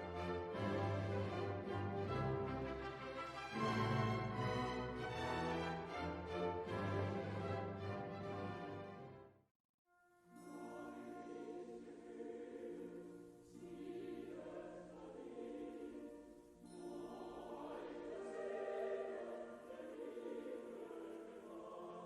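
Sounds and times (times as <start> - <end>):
choir singing sustained chords: 0.0 - 9.2, 10.4 - 22.0.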